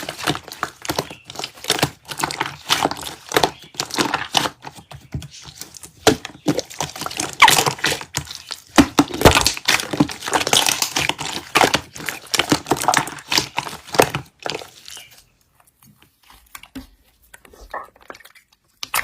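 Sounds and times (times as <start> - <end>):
slime squeezed by hand: 6.4 - 14.0.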